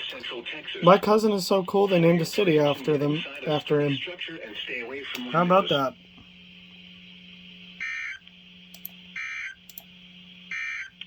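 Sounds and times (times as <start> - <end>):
low electronic buzz: 5.2 - 11.0.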